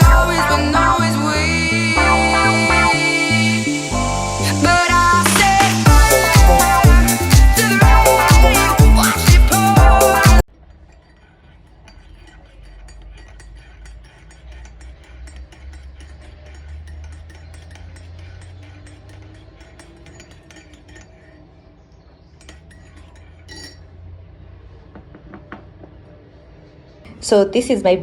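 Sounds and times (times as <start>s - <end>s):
dishes and cutlery clinking: 10.5s - 24.2s.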